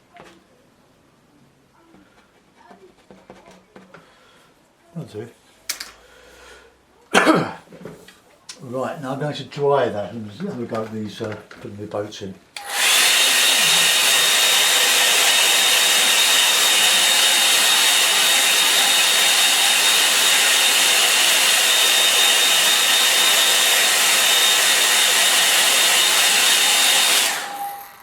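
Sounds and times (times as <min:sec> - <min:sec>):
hair dryer blowing: 0:12.6 - 0:28.0.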